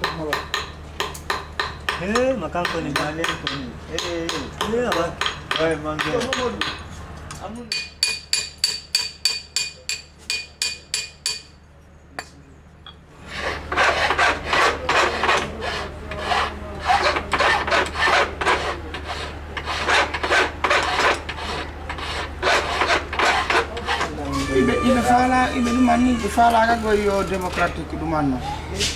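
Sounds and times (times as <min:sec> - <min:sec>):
hammer ringing on metal: 0:07.7 - 0:11.6
file rasping on metal: 0:13.2 - 0:27.4.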